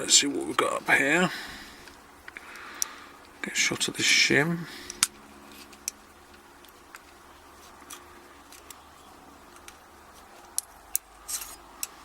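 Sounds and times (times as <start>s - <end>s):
metallic clicks of lock parts: 7.8s - 8.8s, 10.4s - 12.0s.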